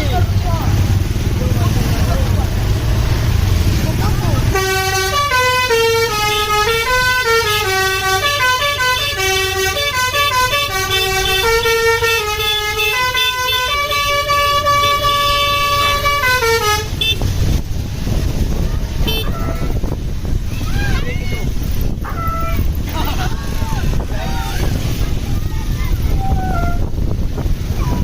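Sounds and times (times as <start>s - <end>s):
low rumble of engine and traffic: 0.0s - 28.0s
bus horn playing melody: 4.5s - 17.4s, 19.0s - 19.7s.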